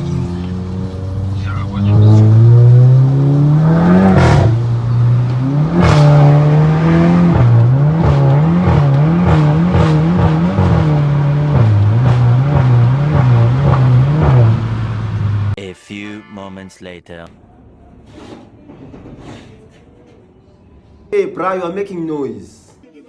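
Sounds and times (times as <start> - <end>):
car engine revving in blips: 0.0 - 15.6
exhaust cracks: 1.4 - 15.6.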